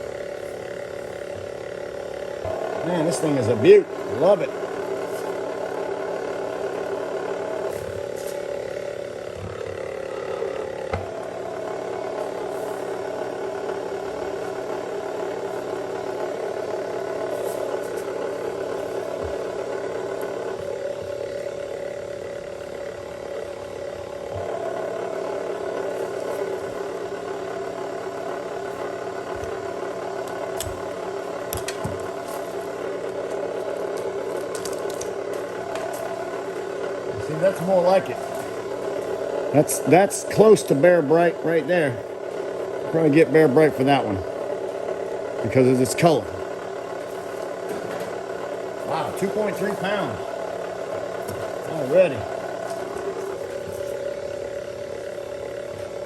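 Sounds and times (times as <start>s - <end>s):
wire stripping machine humming: 0.0s - 56.0s
wire clicking and rattling: 30.2s - 36.1s.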